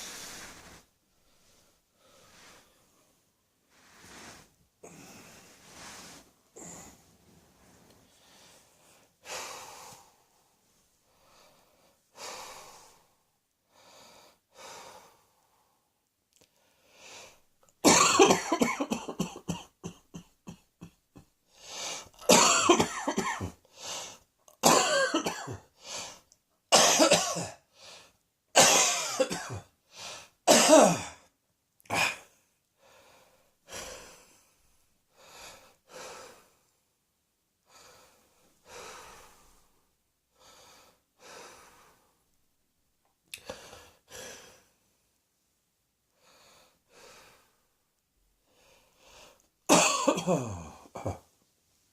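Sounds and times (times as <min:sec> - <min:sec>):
person breathing: 0:00.0 - 0:15.9, 0:16.5 - 0:17.4, 0:21.5 - 0:22.2, 0:23.6 - 0:24.2, 0:25.8 - 0:26.3, 0:27.7 - 0:28.2, 0:29.9 - 0:30.4, 0:31.9 - 0:36.7, 0:37.6 - 0:42.2, 0:43.4 - 0:44.9, 0:46.1 - 0:47.8, 0:48.4 - 0:49.5
person coughing: 0:17.8 - 0:21.0, 0:22.2 - 0:23.6, 0:24.6 - 0:25.7, 0:26.7 - 0:27.6, 0:28.6 - 0:29.7, 0:30.5 - 0:31.2, 0:49.7 - 0:51.3.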